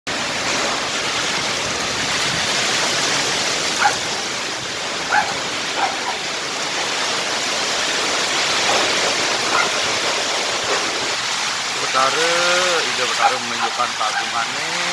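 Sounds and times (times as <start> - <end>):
strong wind blowing: 0.1 - 14.6
dog barking: 3.7 - 4.2, 5.0 - 6.3, 8.6 - 10.0, 13.2 - 14.5.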